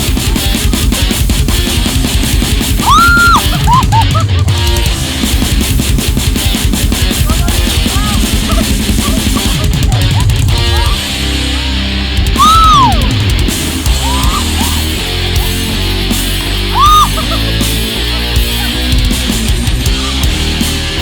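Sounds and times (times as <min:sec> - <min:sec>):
heavy rock music: 0:00.0 - 0:21.0
loud high cries: 0:02.7 - 0:05.3, 0:07.1 - 0:21.0.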